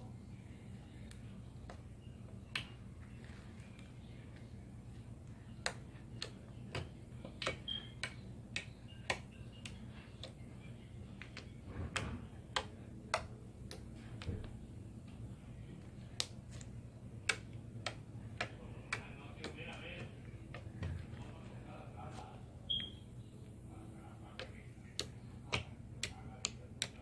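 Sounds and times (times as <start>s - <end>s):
sticky slime clicks: 16.1s - 20.7s, 24.4s - 27.0s.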